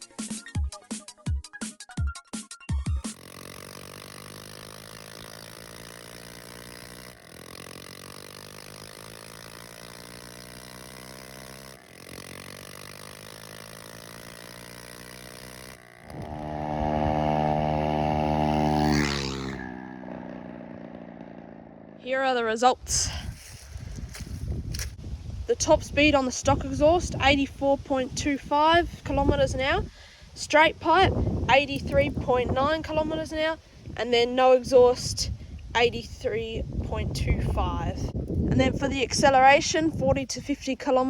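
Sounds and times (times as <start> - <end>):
motorbike engine revving hard: 3.0 - 22.0.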